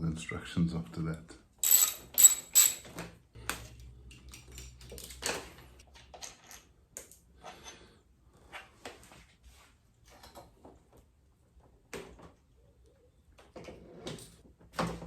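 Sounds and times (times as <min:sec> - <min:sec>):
clinks of hand tools and metal: 0:01.6 - 0:03.1, 0:04.1 - 0:07.8.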